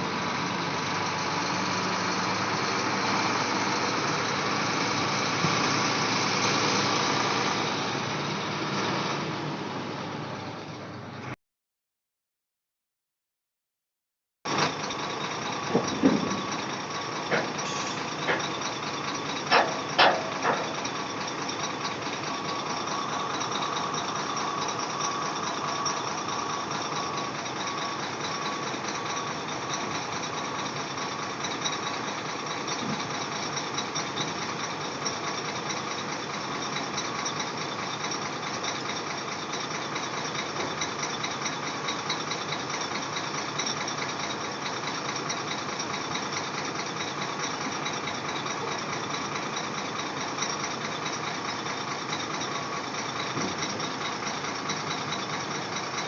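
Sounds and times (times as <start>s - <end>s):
heavy vehicle engine running: 0.0s - 11.4s, 14.5s - 56.0s
sharp knocks: 19.5s - 20.8s.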